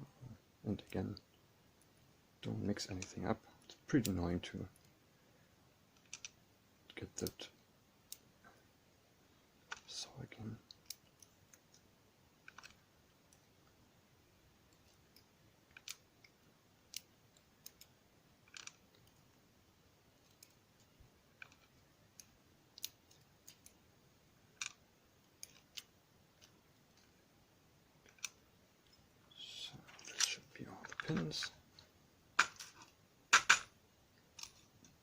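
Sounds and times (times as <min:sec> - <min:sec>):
small metal clicks of lock pins: 0:18.5 - 0:18.8.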